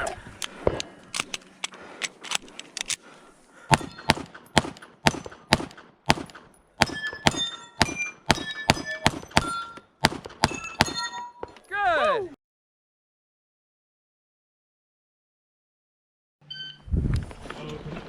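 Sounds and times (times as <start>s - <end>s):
shotgun shells clicking in: 1.1s - 3.0s.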